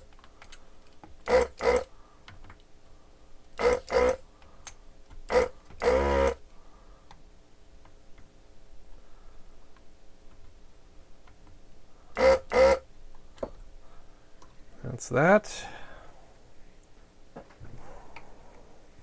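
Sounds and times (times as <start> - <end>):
faint steady hum: 0.0 - 19.0
desoldering pump buzzes: 1.2 - 1.9, 3.6 - 4.3, 5.2 - 6.4, 12.1 - 12.9.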